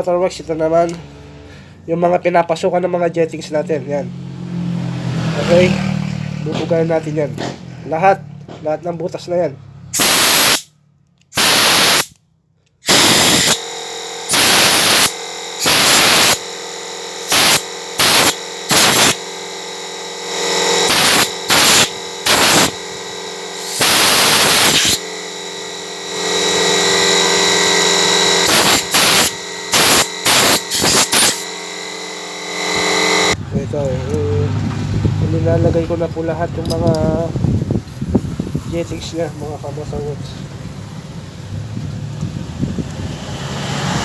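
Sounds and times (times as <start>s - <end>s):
compressed air hissing bursts: 10.0s - 10.7s, 11.4s - 12.2s, 12.8s - 13.6s, 14.3s - 16.4s, 17.2s - 19.3s, 20.8s - 25.2s, 28.4s - 31.5s
steady hum: 12.8s - 33.4s.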